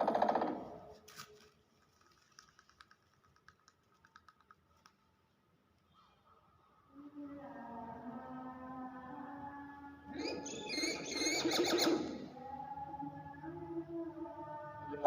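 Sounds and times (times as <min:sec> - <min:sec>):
faint irregular clicks and taps: 0:01.8 - 0:05.1.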